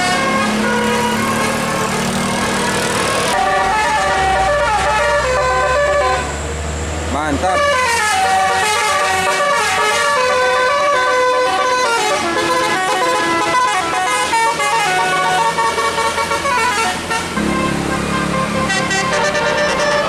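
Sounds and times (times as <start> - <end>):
musical air horn melody: 0.0 - 6.4, 7.6 - 20.0
bus engine humming: 0.0 - 20.0
deep held horn tone: 11.4 - 20.0.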